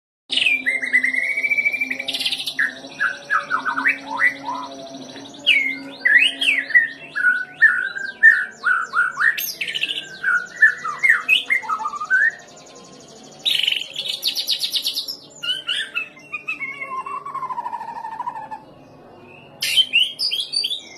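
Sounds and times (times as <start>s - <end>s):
harsh buzzy bird notes: 0.3s - 20.9s
bird singing varied whistles: 5.5s - 12.5s.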